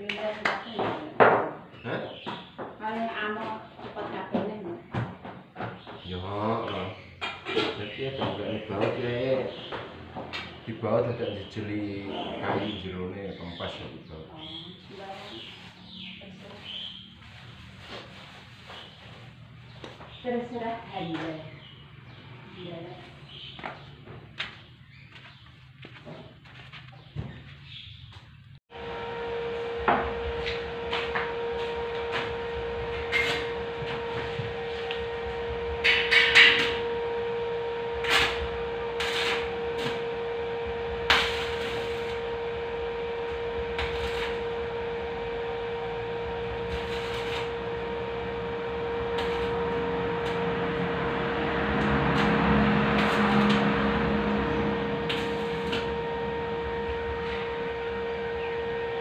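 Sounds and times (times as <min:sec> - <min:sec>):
electrical hum: 0:00.0 - 0:59.0
rushing noise: 0:49.4 - 0:57.4.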